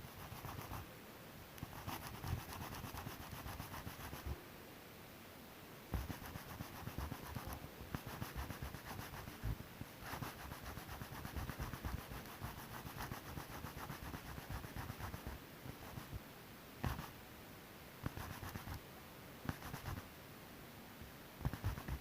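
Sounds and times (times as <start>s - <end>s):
hand sanding panel: 6.0s - 9.5s, 10.1s - 16.2s.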